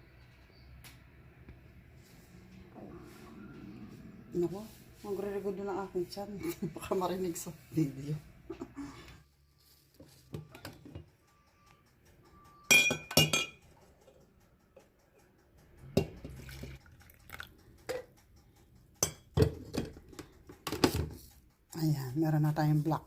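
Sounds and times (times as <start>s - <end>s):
cups and utensils clinking: 12.7s - 13.7s, 16.0s - 18.1s, 19.0s - 21.2s
coffee pouring: 16.3s - 18.1s.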